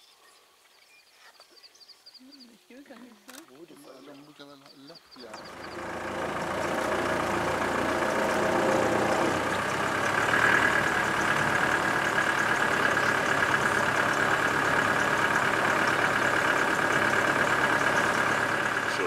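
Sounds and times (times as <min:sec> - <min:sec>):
vehicle engine running: 0:05.2 - 0:19.0.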